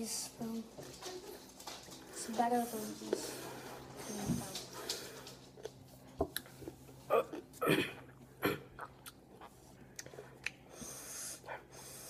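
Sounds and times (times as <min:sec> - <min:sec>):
boy coughing: 0:07.1 - 0:08.8
breathing with mouth noises: 0:10.1 - 0:12.0.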